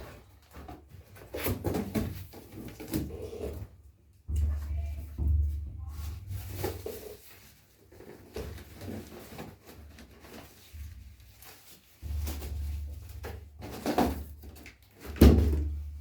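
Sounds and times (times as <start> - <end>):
cardboard box rustling and scraping: 6.0 - 14.7.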